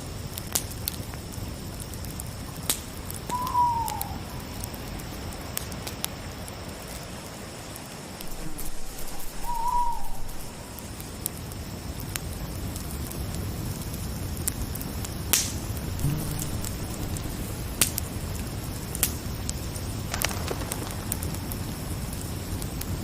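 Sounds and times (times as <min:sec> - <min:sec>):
campfire hissing and crackling: 0:00.0 - 0:23.0
fire popping: 0:00.1 - 0:23.0
crickets chirring: 0:01.2 - 0:23.0
owl hooting: 0:03.3 - 0:04.4, 0:08.3 - 0:10.6, 0:15.9 - 0:17.8.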